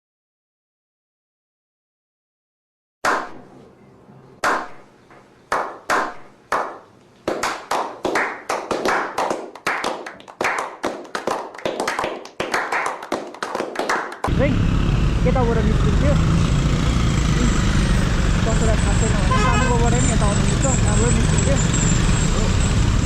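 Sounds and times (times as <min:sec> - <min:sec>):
sharp hand slaps: 0:03.0 - 0:03.5, 0:04.4 - 0:04.9, 0:05.5 - 0:14.3.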